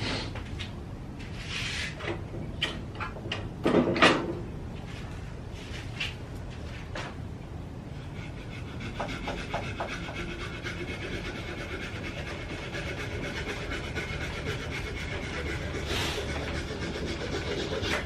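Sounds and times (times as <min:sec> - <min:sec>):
sandpaper on spinning wood bowl: 0:08.6 - 0:18.0.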